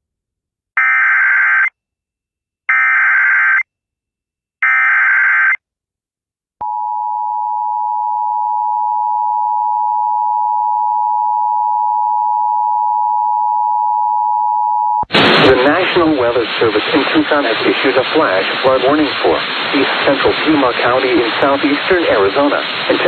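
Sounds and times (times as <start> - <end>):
long steady attention tone: 6.6 - 19.1.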